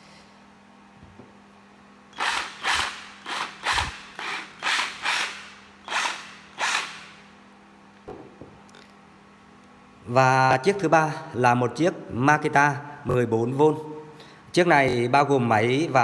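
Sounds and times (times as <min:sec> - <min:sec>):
cordless drill bursts: 0:02.2 - 0:07.2.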